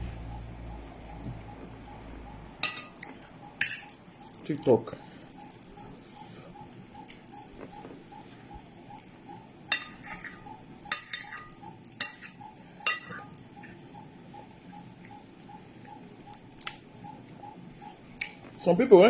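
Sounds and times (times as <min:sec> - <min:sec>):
spoon clinking against plate: 0:02.6 - 0:04.3, 0:09.7 - 0:13.4
spoon scraping plate: 0:09.8 - 0:10.4.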